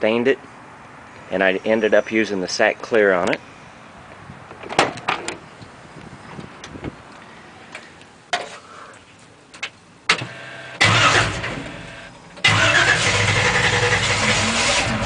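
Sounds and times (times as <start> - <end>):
engine revving: 10.4 - 15.0
car engine running loud: 10.8 - 15.0
engine cranking: 10.8 - 15.0.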